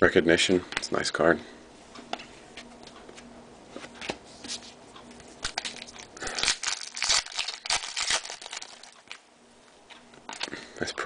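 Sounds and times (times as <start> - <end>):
foil wrapper crinkling: 5.4 - 9.2.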